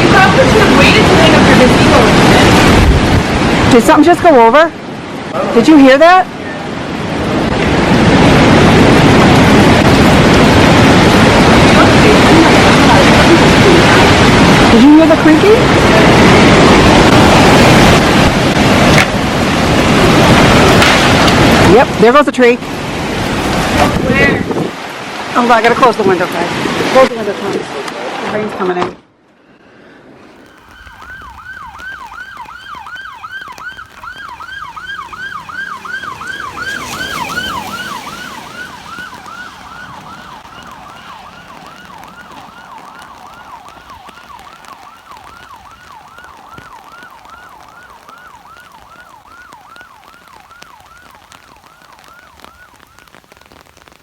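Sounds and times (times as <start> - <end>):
emergency siren yelping: 7.7 - 22.0, 30.4 - 53.9.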